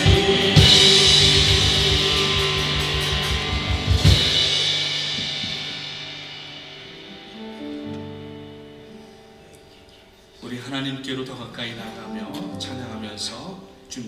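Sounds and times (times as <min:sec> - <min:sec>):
rapid drum hits: 0:00.0 - 0:07.6
cymbal crash: 0:00.0 - 0:09.3
band chords ringing out: 0:00.0 - 0:09.7.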